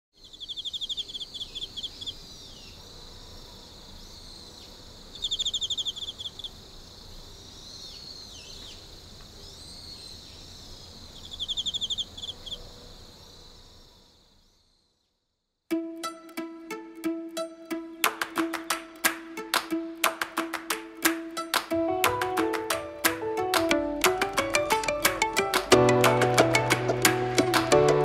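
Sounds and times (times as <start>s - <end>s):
birds singing: 0.2s - 15.1s
rapid high bird trill: 0.3s - 2.9s, 5.1s - 6.6s, 11.2s - 12.7s.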